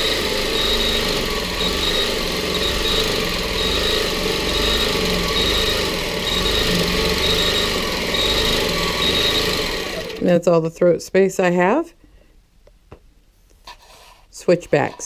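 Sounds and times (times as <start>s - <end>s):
high machine whine: 0.0s - 10.4s
quilting machine stitching: 0.0s - 10.4s.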